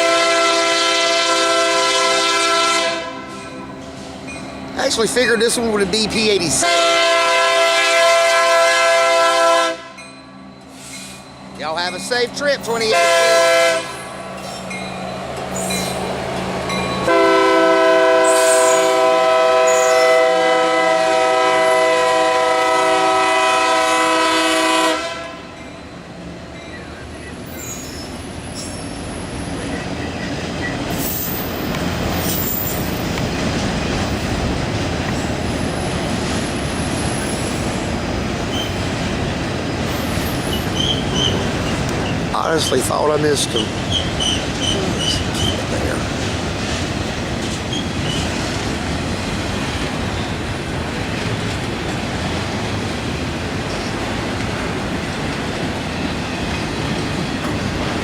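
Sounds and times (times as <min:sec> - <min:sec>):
train air horn blast: 0:00.0 - 0:03.6, 0:06.6 - 0:10.0, 0:12.9 - 0:14.1, 0:17.1 - 0:25.5
diesel locomotive engine droning: 0:00.0 - 0:58.0
train wheels rolling on rails: 0:01.7 - 0:07.2, 0:10.0 - 0:24.7, 0:25.5 - 0:58.0.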